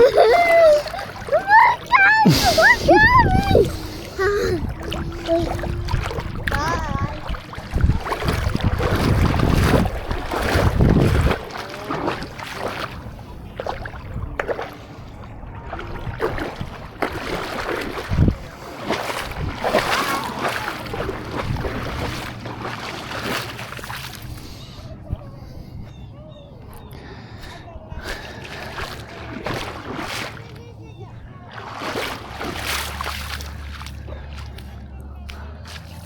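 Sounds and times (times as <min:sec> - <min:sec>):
wind rumbling on microphone: 0:00.0 - 0:34.2
water splashing and sloshing: 0:00.0 - 0:36.0.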